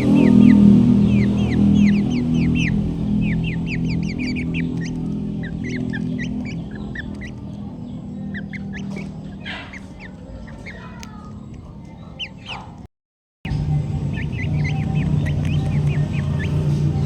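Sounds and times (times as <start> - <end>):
low steady hum: 0.0 - 12.8, 13.5 - 17.0
chickens chirping: 0.0 - 12.9, 13.5 - 17.0
chickens clucking: 0.0 - 12.9, 13.5 - 17.0.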